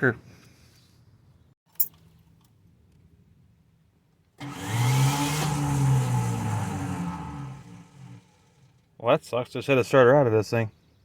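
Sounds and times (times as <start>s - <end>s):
starter motor whirring: 4.4s - 8.9s.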